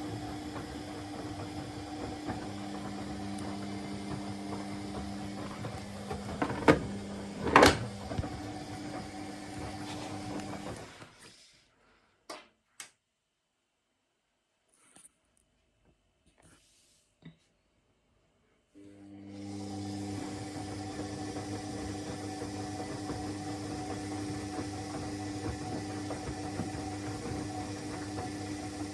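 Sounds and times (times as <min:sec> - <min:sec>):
washing machine humming: 0:00.0 - 0:11.2, 0:19.0 - 0:28.9.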